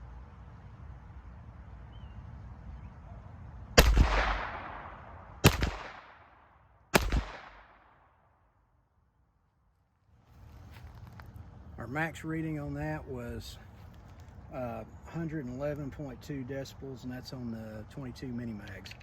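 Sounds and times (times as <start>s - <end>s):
pistol gunshots with echo: 3.8s - 8.2s.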